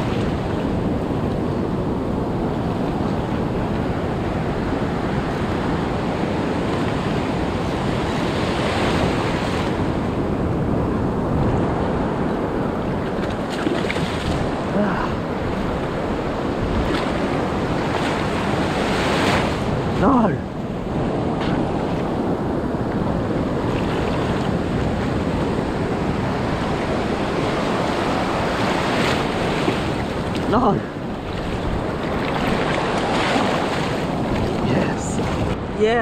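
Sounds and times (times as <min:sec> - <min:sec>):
ocean surf washing on beach: 0:00.0 - 0:36.0
wind buffeting microphone: 0:00.0 - 0:36.0.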